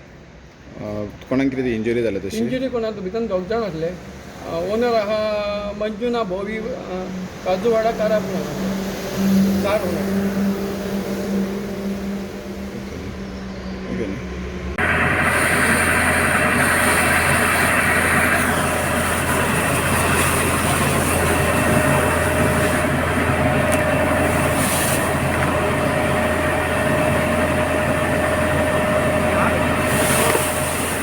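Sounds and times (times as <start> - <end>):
steady whine: 3.4 - 31.0
pump engine running: 8.1 - 31.0
fire hose water jet rushing: 14.8 - 31.0.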